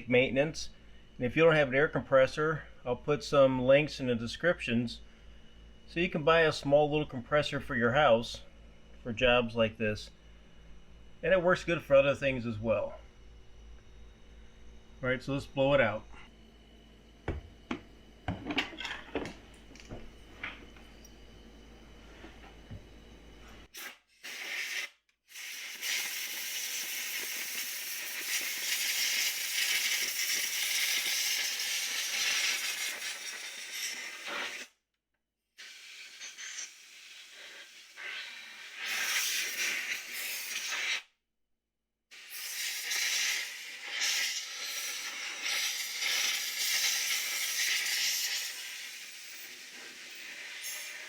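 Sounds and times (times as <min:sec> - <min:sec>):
compressed air hissing: 0:23.6 - 0:34.8, 0:35.6 - 0:41.1, 0:42.1 - 0:51.0.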